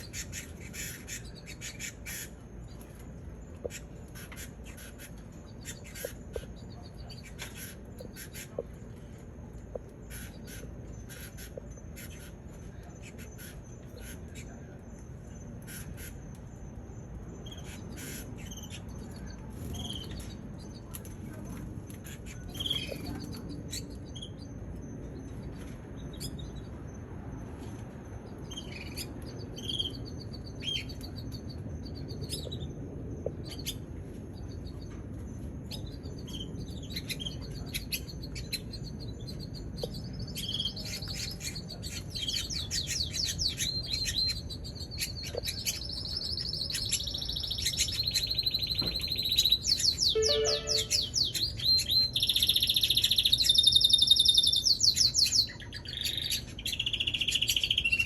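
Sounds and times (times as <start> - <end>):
canary chirping and trilling: 22.0 - 58.0.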